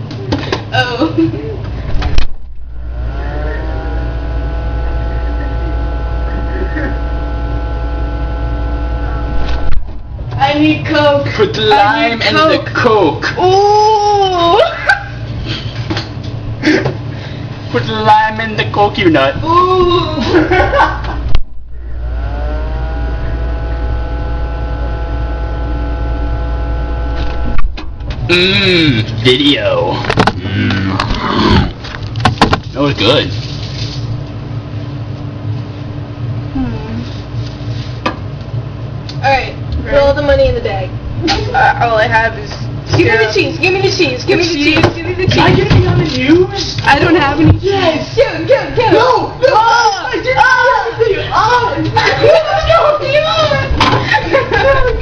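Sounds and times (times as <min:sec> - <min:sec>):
mains hum: 0:00.0 - 0:55.0
appliance motor whine: 0:01.6 - 0:55.0.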